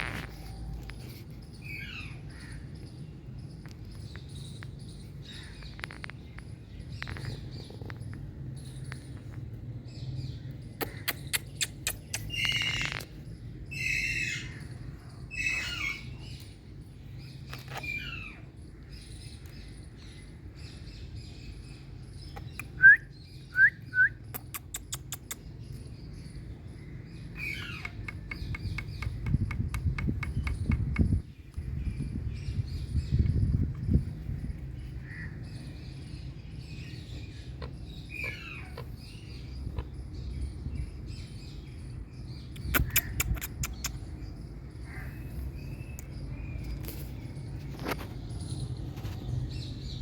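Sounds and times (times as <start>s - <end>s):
parrot chirping and squawking: 10.8s - 13.1s, 13.7s - 14.6s, 15.3s - 16.2s, 27.4s - 29.2s, 37.1s - 40.4s, 42.6s - 44.1s
parrot clicks: 42.6s - 44.0s.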